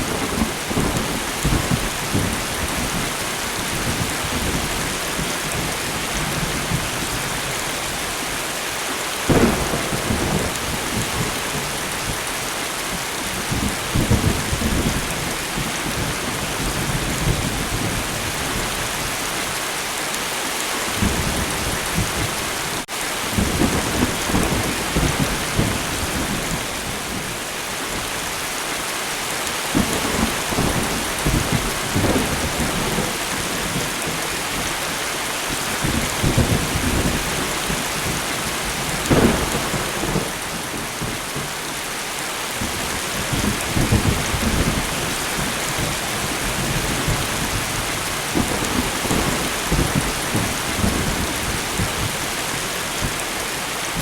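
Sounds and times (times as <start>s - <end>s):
steady rain falling: 0.0s - 54.0s
thunder rumbling: 9.3s - 19.1s, 29.7s - 34.9s, 35.5s - 41.6s, 42.6s - 53.2s.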